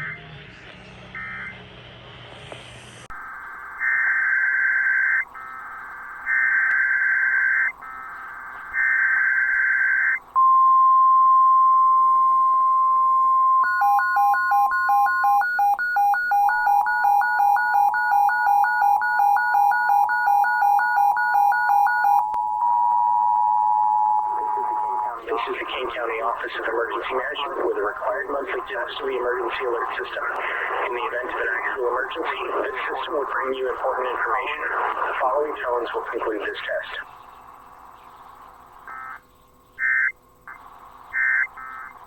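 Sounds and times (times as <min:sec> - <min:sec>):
steady warning tone: 0:03.1 - 0:42.0
rapid two-pitch beeping: 0:13.4 - 0:36.5.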